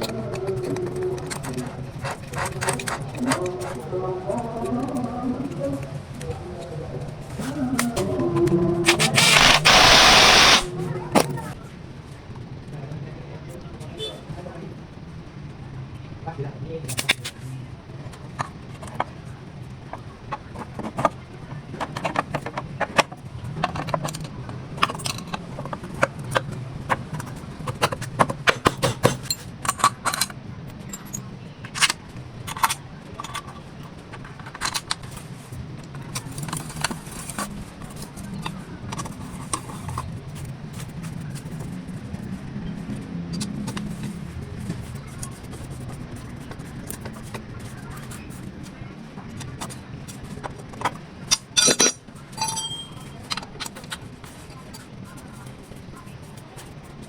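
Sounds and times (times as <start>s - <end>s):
metallic clinks of hand tools: 51.3s - 53.2s.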